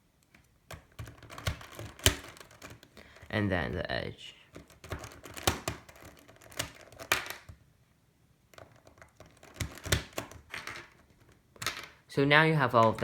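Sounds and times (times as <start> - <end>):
plastic cube pieces clicking: 0.2 - 3.3, 4.5 - 7.7, 8.5 - 12.0.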